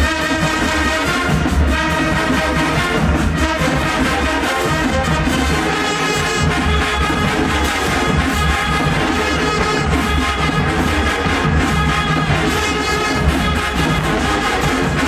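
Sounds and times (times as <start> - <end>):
brass section playing: 0.0 - 15.0
pounding bass drums: 0.0 - 15.0.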